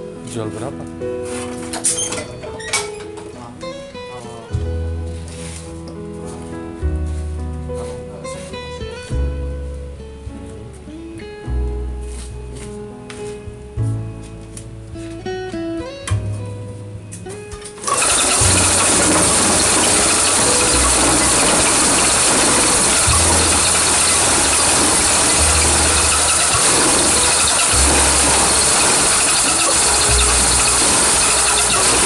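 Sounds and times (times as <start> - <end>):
music with plucked notes: 0.0 - 32.0
block press machine rattling: 17.8 - 32.0
deep machine hum: 17.8 - 32.0.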